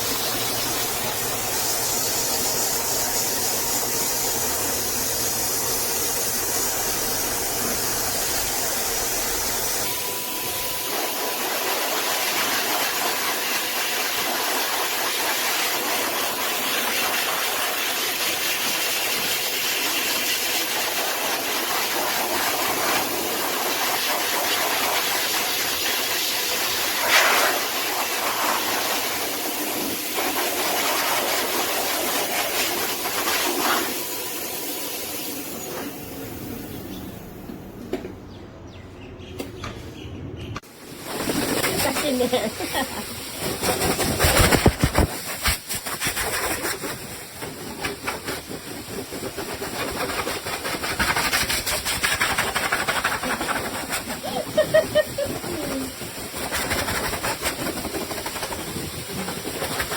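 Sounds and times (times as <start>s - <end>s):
pet hair dryer blowing: 0.0s - 36.0s, 41.0s - 59.9s.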